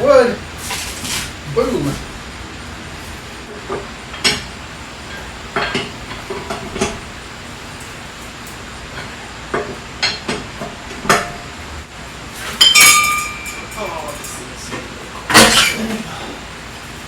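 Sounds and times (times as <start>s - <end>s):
metal tools clinking: 12.4s - 16.1s
ringing metal clank: 12.6s - 14.4s.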